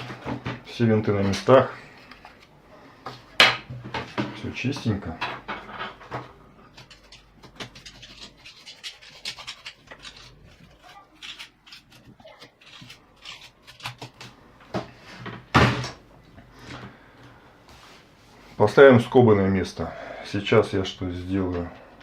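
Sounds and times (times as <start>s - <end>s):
keyboard parts clicking and tapping: 6.7s - 10.2s.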